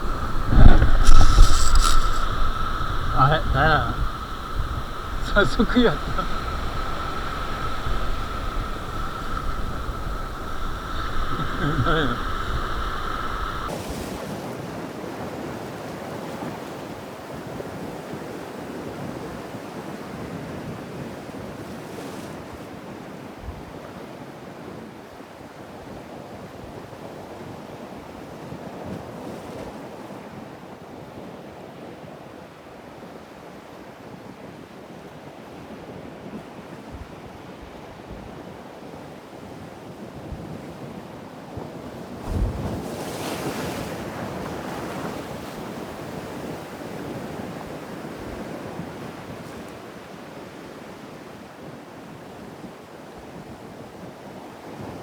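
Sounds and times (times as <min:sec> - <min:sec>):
wind buffeting microphone: 0:00.0 - 0:13.7
sea surf washing: 0:00.0 - 0:14.1.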